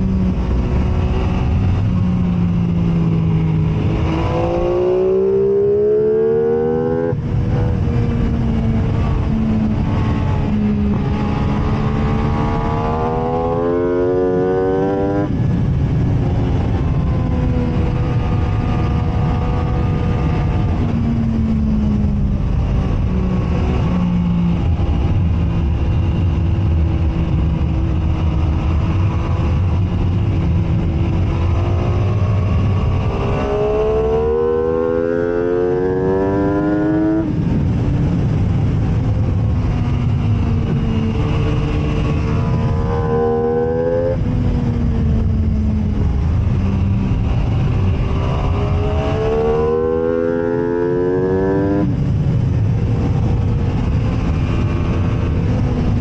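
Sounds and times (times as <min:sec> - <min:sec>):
sport bike engine revving: 0:02.6 - 0:07.7, 0:09.7 - 0:15.5, 0:30.9 - 0:37.4, 0:41.2 - 0:44.3, 0:47.3 - 0:52.0.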